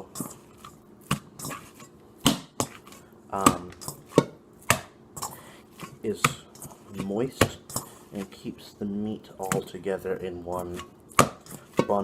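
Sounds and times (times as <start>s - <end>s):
hands slapping raw meat: 2.2s - 5.0s, 5.8s - 8.4s, 11.1s - 12.0s.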